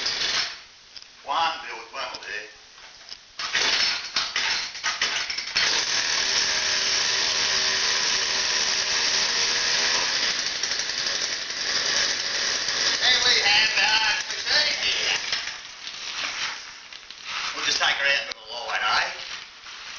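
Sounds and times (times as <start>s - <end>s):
two-stroke engine starting: 3.4s - 15.2s.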